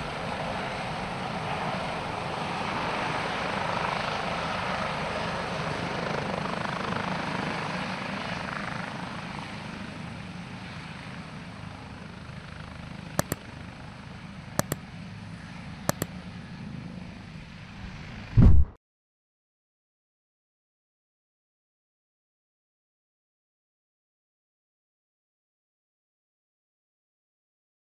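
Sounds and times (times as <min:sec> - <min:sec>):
helicopter engine and rotor noise: 0:00.0 - 0:17.4
sharp double clicks: 0:13.2 - 0:13.4.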